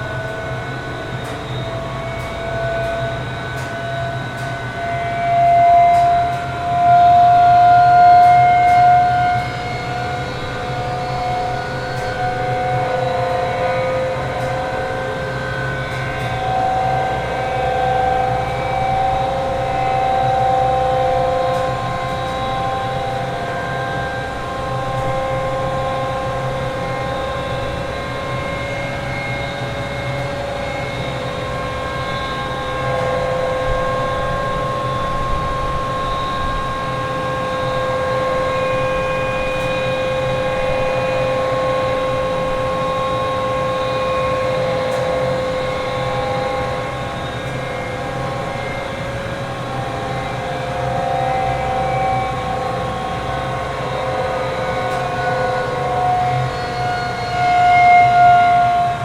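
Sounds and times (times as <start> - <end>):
low machinery hum: 0.0 - 59.0
machine whines: 0.0 - 59.0.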